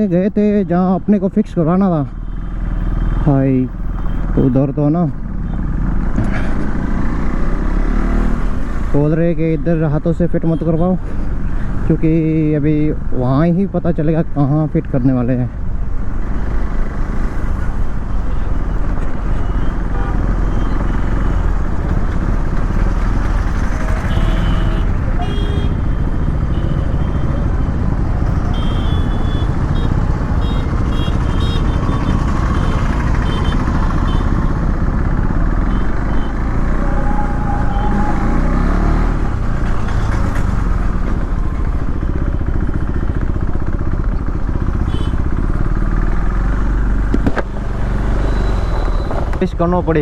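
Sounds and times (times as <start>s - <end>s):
motorcycle engine running: 16.8s - 36.6s, 39.0s - 49.4s
wind rumble on microphone: 31.7s - 32.7s.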